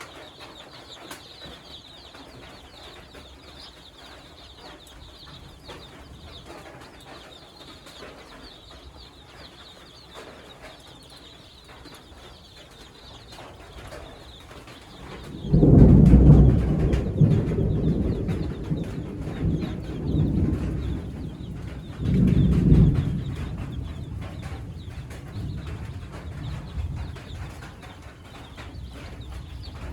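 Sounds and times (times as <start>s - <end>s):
chicks peeping: 0.0s - 29.9s
loud low rumble: 15.3s - 27.7s.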